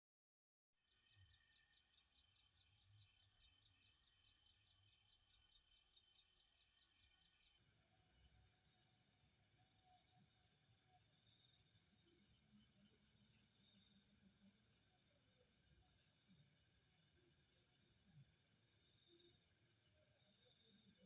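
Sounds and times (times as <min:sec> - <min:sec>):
crickets trilling: 0:07.6 - 0:21.0.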